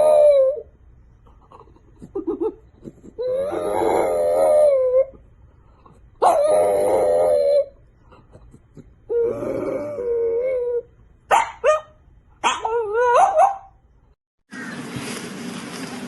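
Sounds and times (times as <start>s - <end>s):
dog howling: 0.0s - 0.7s, 3.2s - 5.2s, 6.2s - 7.8s, 9.1s - 10.9s
dog yipping: 6.2s - 7.7s, 11.3s - 13.8s.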